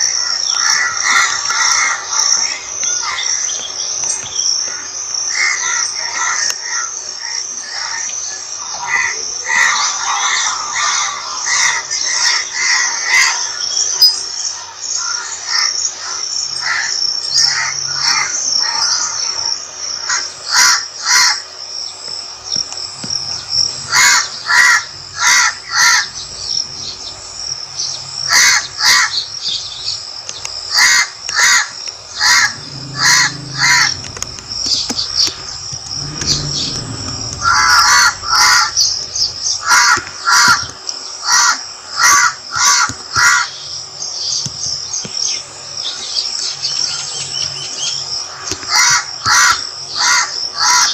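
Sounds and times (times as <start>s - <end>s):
insects droning: 0.0s - 50.9s
crows cawing: 23.9s - 26.2s, 28.3s - 29.2s, 30.7s - 43.5s, 48.3s - 50.9s.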